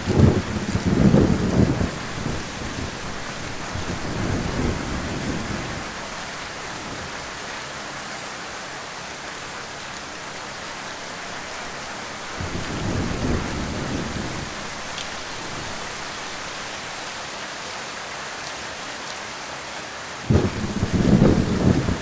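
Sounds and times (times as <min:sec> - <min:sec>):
low roll of thunder: 0:00.0 - 0:06.1, 0:12.4 - 0:15.9, 0:20.3 - 0:22.0
heavy rain hissing: 0:00.0 - 0:22.0.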